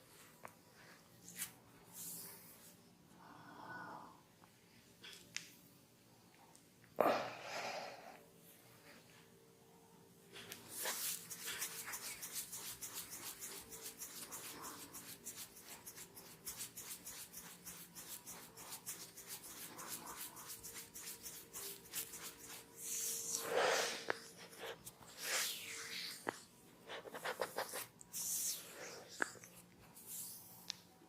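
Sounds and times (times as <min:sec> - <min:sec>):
hands rubbing a head: 0:10.4 - 0:30.8.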